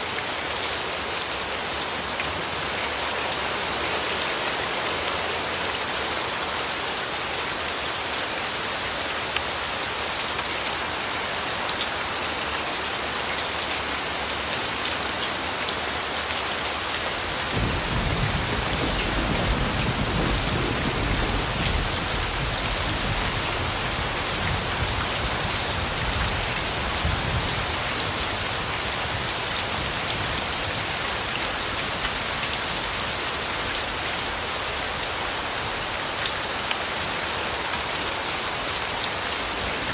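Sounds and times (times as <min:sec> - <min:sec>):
heavy rain falling: 0:00.0 - 0:39.9
low rumble of thunder: 0:17.5 - 0:25.4.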